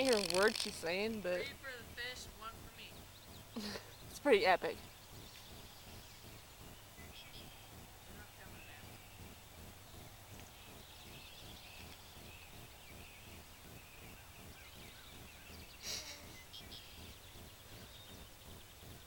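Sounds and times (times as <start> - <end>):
distant birds chirping: 0.0 - 19.0.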